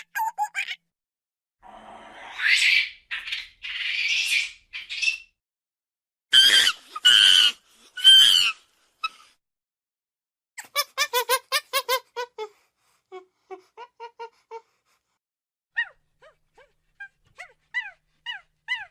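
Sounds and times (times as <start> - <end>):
monkeys screeching: 6.3 - 8.6
monkeys squealing: 6.3 - 8.6.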